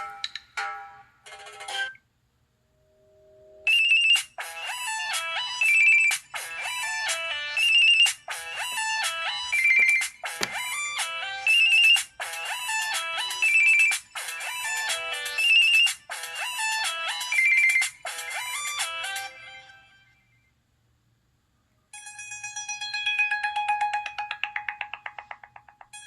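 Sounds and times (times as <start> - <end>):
electronic ringtone melody: 3.6 - 10.2, 21.9 - 26.0.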